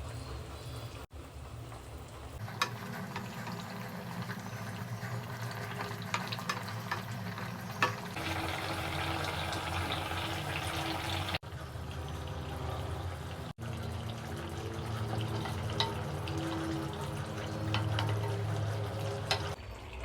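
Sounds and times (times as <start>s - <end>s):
watery cooking hiss: 0.0s - 11.6s.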